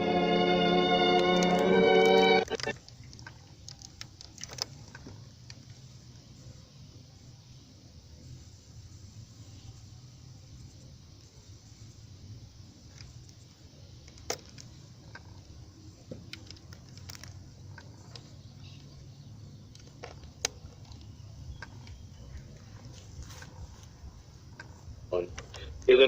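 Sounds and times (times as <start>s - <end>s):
radio low hum: 0.0s - 2.8s
faint radio hiss: 0.0s - 26.0s
sharp clicks and crackles: 1.4s - 5.8s, 12.9s - 19.0s, 19.6s - 26.0s.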